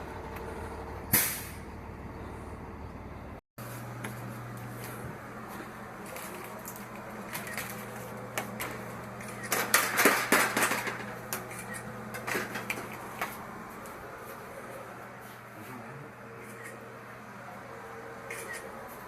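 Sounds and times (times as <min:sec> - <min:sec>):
hard objects clattering: 0:06.0 - 0:13.5.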